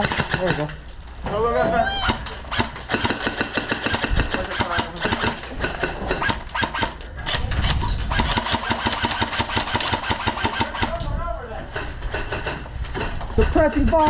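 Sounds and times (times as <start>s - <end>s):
airsoft guns firing full auto: 0.0s - 0.8s, 2.5s - 11.0s.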